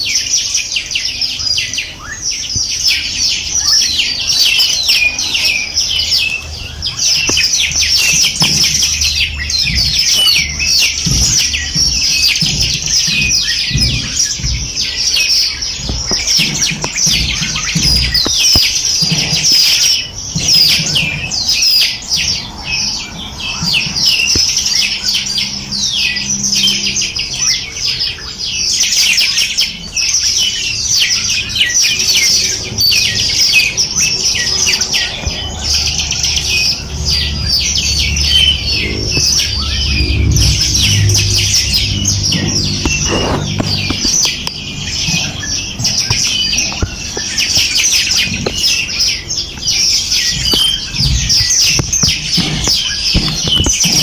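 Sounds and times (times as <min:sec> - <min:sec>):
small birds chirping: 0:00.0 - 0:54.0
low rumbles and thumps: 0:05.9 - 0:24.6, 0:32.0 - 0:54.0.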